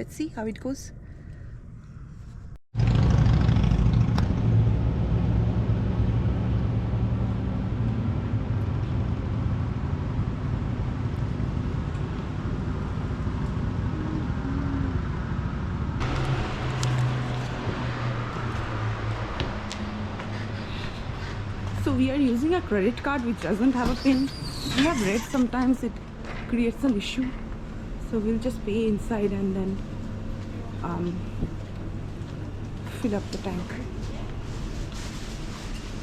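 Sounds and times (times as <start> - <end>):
car engine and road noise: 2.8 - 26.4.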